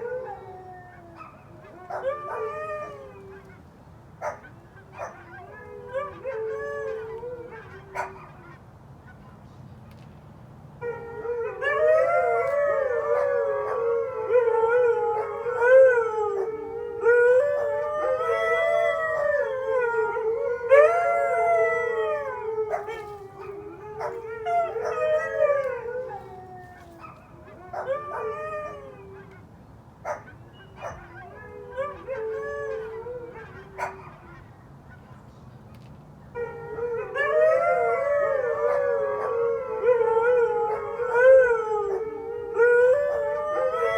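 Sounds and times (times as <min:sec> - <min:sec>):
huskies howling: 0:10.8 - 0:29.3, 0:36.4 - 0:43.9.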